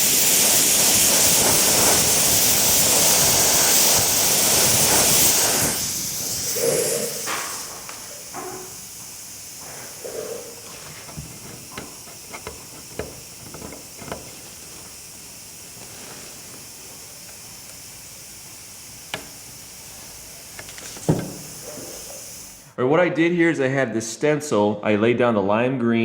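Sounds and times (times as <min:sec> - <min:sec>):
airbrush hissing: 0:00.0 - 0:22.7.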